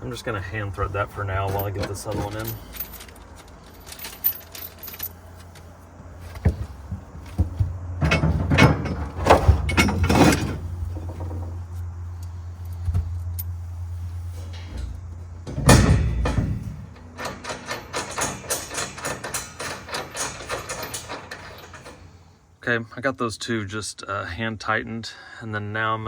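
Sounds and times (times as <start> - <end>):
steady low hum: 0.0 - 22.8
metal clicks and knocks: 1.4 - 13.5, 14.4 - 22.2
metal scraping on metal: 8.0 - 22.4.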